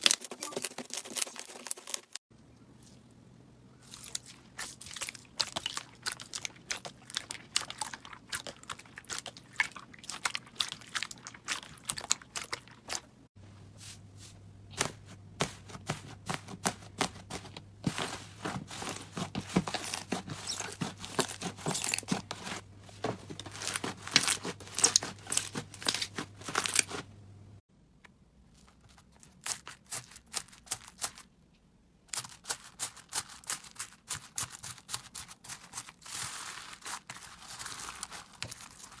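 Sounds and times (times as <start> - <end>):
slime squished crackling: 3.8 - 13.2.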